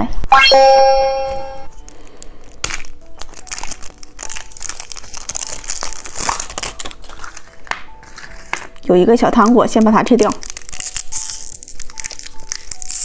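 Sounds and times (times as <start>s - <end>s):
wrapper tearing: 1.8s - 8.9s, 9.8s - 13.0s
wrapper crackling and rustling: 1.8s - 13.0s.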